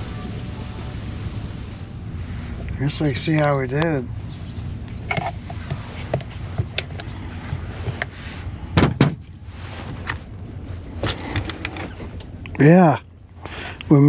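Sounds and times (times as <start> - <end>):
low steady hum: 0.0 - 7.2.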